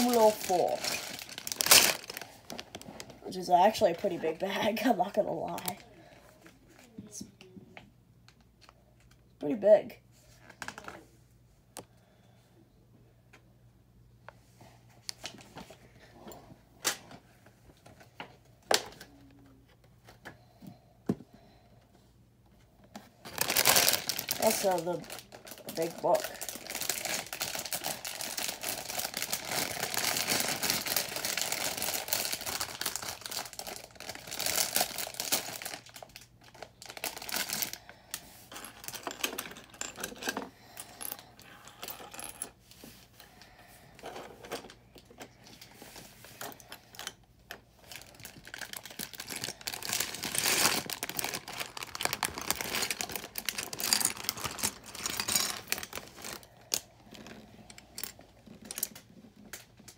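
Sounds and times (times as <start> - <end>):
plastic bag crinkling: 0.0 - 6.0, 23.2 - 40.4, 46.3 - 59.6.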